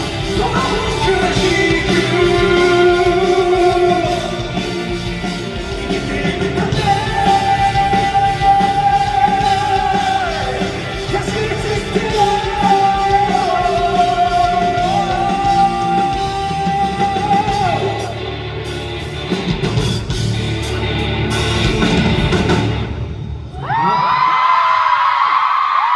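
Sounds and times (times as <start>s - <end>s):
live rock band: 0.0s - 23.5s
audience screaming and cheering: 0.0s - 25.9s.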